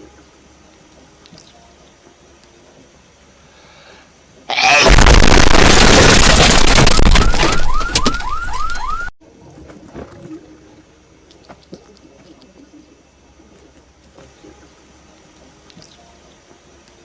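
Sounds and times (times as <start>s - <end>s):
distorted blast of noise: 4.5s - 8.2s.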